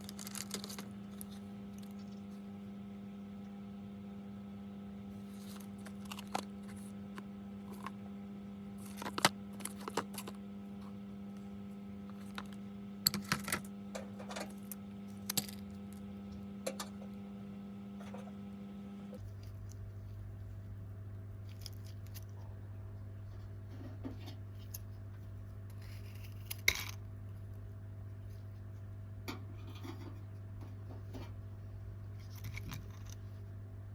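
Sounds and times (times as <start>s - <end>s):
snack packaging crinkling: 0.0s - 2.0s
electrical hum: 0.0s - 33.9s.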